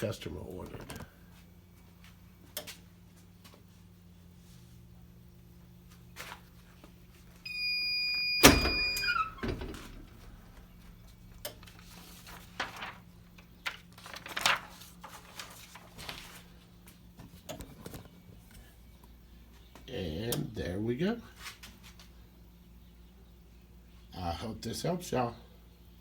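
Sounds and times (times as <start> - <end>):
heat press clunk: 8.4 - 10.2.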